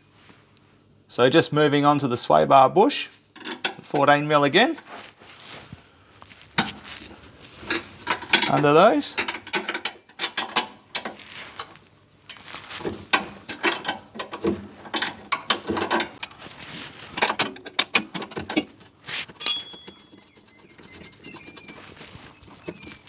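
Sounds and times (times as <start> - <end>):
sharp metallic clink: 19.4 - 20.2.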